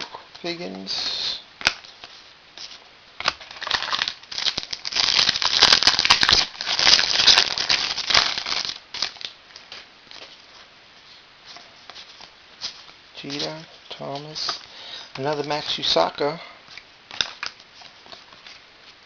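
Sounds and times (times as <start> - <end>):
foil wrapper crinkling and tearing: 3.2 - 10.3.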